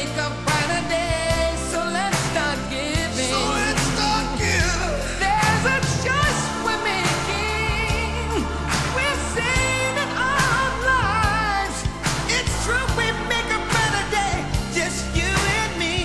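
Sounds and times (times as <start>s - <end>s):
bass: 0.0s - 16.0s
person singing: 0.0s - 16.0s
steady drum beat: 0.3s - 16.0s.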